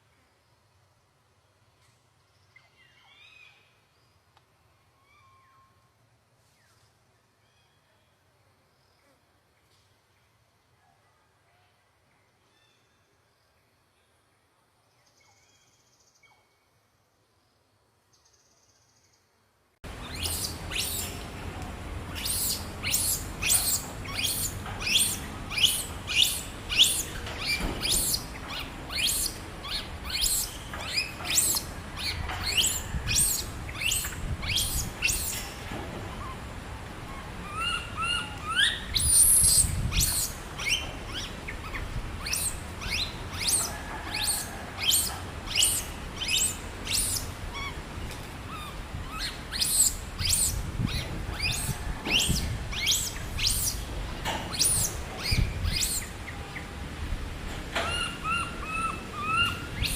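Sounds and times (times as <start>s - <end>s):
bird chirping sharply: 20.0s - 21.2s.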